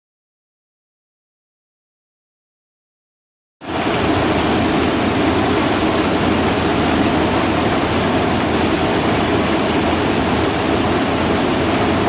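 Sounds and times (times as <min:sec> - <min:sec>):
rice huller rushing and rattling: 0:03.7 - 0:12.0.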